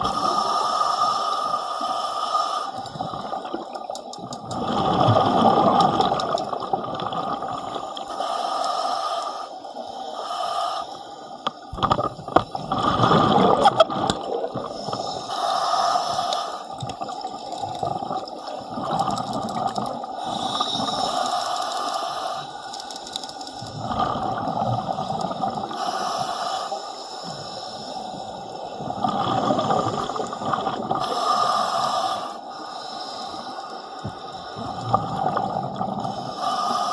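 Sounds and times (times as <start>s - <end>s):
diver breathing in mask: 0.0s - 3.7s, 7.5s - 11.7s, 14.5s - 17.1s, 18.8s - 36.9s
underwater water noise: 0.0s - 36.9s.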